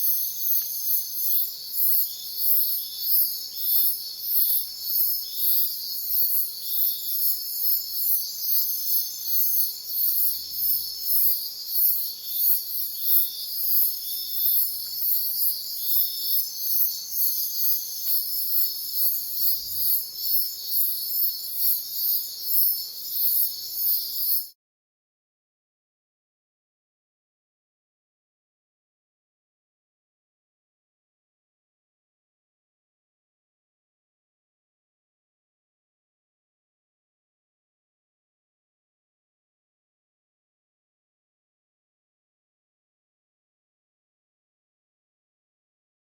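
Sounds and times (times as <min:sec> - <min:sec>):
crickets chirping: 0:00.0 - 0:24.6.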